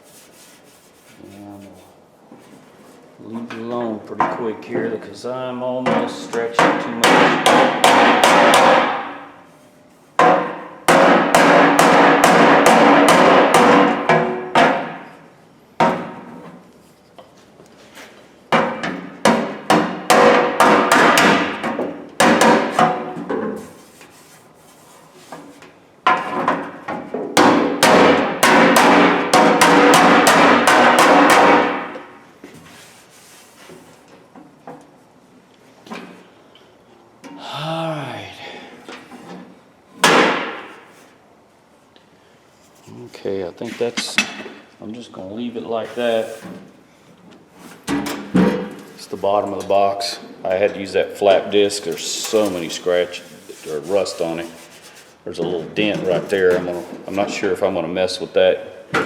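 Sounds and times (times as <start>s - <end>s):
hammer striking sheet steel: 6.0s - 9.3s, 10.2s - 15.1s, 18.6s - 23.2s, 27.4s - 32.1s, 40.0s - 40.9s.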